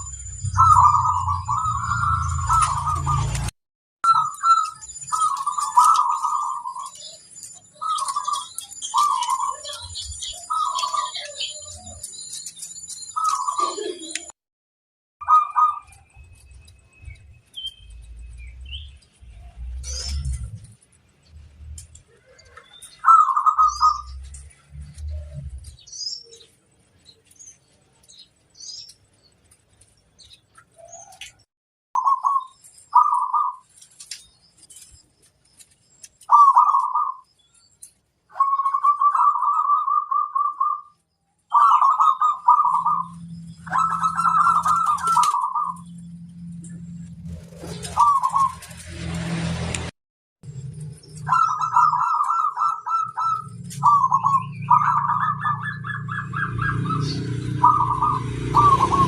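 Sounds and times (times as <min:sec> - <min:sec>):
dove cooing: 0:00.0 - 0:03.5, 0:04.1 - 0:12.6, 0:13.2 - 0:14.3, 0:15.2 - 0:16.0, 0:22.1 - 0:25.6, 0:32.0 - 0:33.7, 0:36.3 - 0:37.2, 0:38.3 - 0:40.9, 0:41.5 - 0:45.9, 0:47.4 - 0:48.7, 0:51.2 - 0:59.0
small birds chirping: 0:00.0 - 0:14.4, 0:15.2 - 0:48.8, 0:50.5 - 0:59.0.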